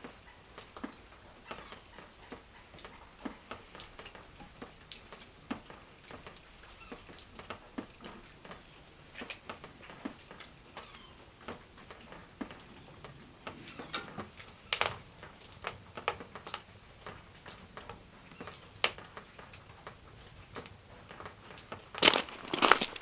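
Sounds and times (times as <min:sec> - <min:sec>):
sharp cracks: 0:14.0 - 0:23.0.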